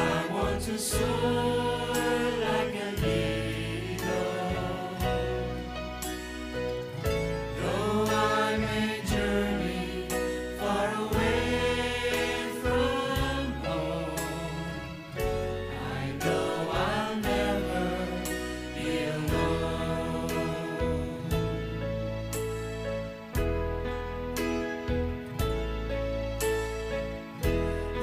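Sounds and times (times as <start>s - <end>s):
gospel singing: 0.0s - 22.2s
sustained bass: 0.0s - 28.0s.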